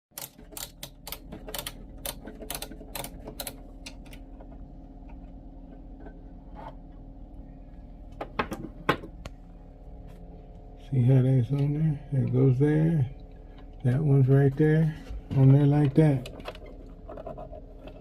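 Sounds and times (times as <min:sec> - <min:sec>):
sewing machine parts clicking: 0:00.1 - 0:04.2
steady low hum: 0:00.2 - 0:18.0.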